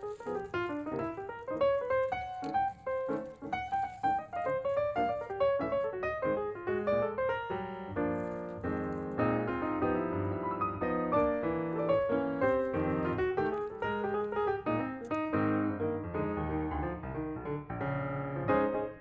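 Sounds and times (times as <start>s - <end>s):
piano music: 0.0s - 19.0s.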